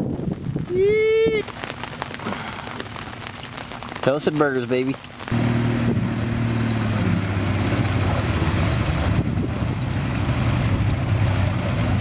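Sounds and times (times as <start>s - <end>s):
water rushing past boat: 0.0s - 12.0s
motorboat engine running: 5.2s - 12.0s.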